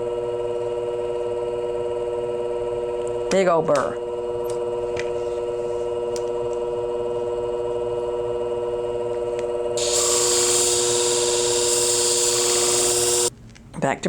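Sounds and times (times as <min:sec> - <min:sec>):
motor humming: 0:09.7 - 0:13.3
blade grinding on abrasive: 0:09.8 - 0:13.3.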